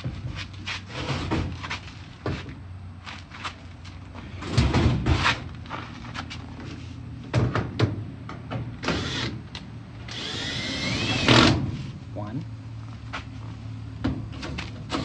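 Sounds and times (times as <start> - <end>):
knocks and clatter of parts: 3.8 - 6.3, 7.3 - 9.0
power drill-driver running: 10.1 - 11.5.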